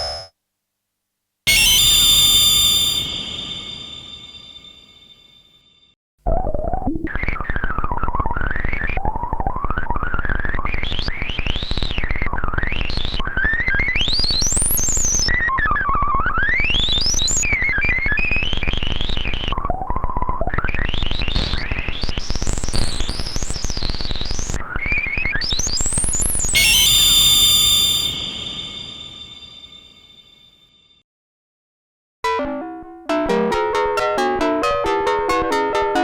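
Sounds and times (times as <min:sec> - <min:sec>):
held synth tone with overtones: 0:00.0 - 0:00.3, 0:01.5 - 0:04.9, 0:26.6 - 0:30.0, 0:32.3 - 0:36.0
synthesizer buzzing pitch glides: 0:01.5 - 0:04.6.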